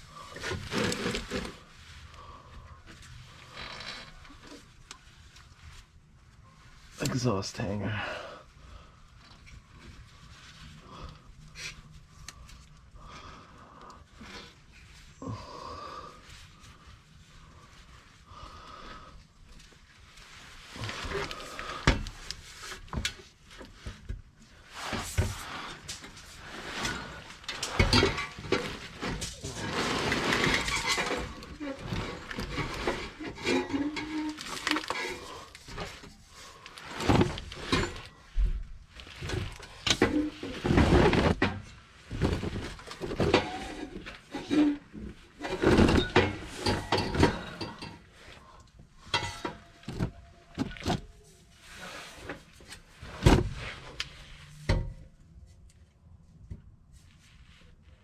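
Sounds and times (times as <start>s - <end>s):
metal clinks and scraping: 49.0s - 50.0s.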